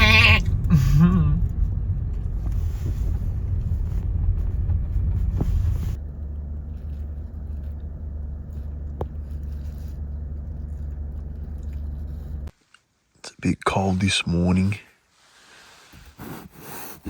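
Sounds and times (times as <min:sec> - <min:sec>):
car engine running: 0:00.0 - 0:12.5.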